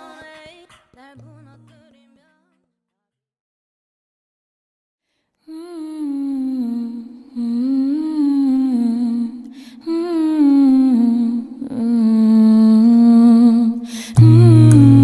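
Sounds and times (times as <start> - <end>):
person humming a slow melody: 5.5 - 15.0.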